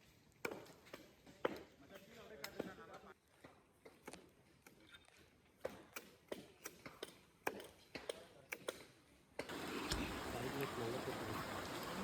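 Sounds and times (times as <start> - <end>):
blade chopping wood: 0.5 - 1.7.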